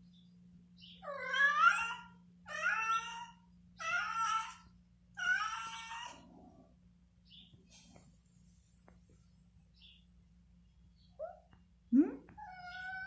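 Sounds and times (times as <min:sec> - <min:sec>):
cat meowing: 0:01.0 - 0:04.6, 0:05.2 - 0:06.2, 0:12.4 - 0:13.0.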